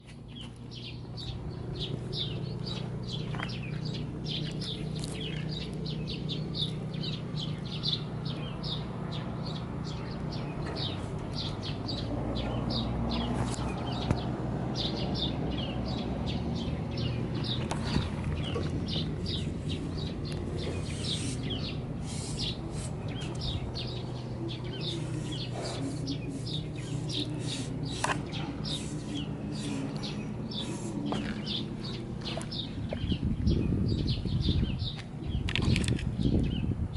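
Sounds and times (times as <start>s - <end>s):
birds chirping: 0.0s - 36.9s.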